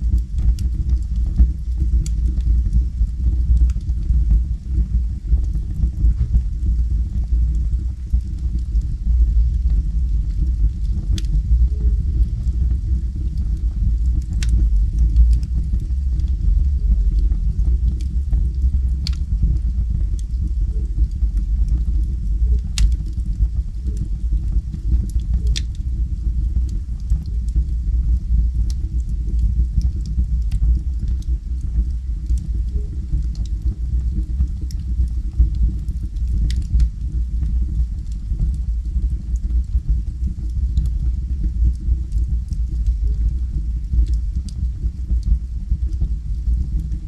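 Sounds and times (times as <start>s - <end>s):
fire crackles and pops: 0.0s - 47.0s
fire rumbling: 0.0s - 47.0s
loud pops of burning wood: 22.7s - 23.2s.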